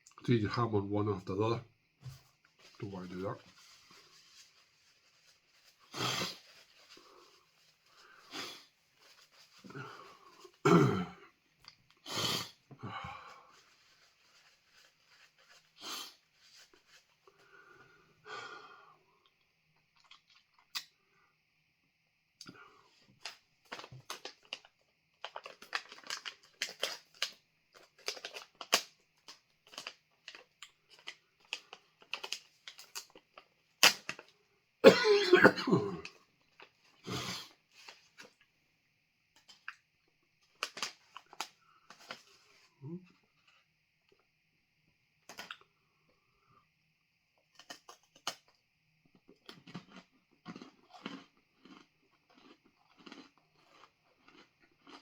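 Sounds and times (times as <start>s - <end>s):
man coughing: 10.7s - 11.2s, 34.8s - 36.1s
man chewing crunchy food: 19.9s - 20.9s, 23.7s - 33.5s, 49.1s - 55.0s.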